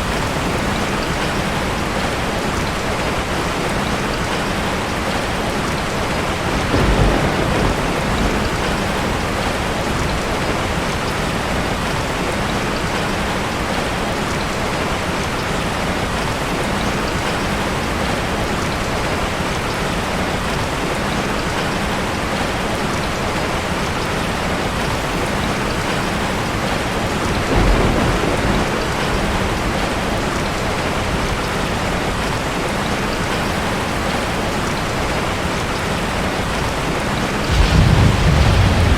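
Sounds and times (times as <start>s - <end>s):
rain falling: 0.0s - 38.9s
thunder rumbles: 6.1s - 11.2s, 24.8s - 32.3s, 37.4s - 38.9s.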